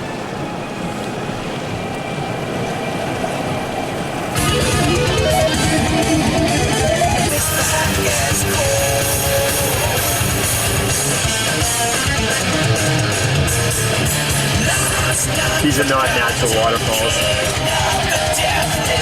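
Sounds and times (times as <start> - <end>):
strummed guitar music: 4.4 - 19.0.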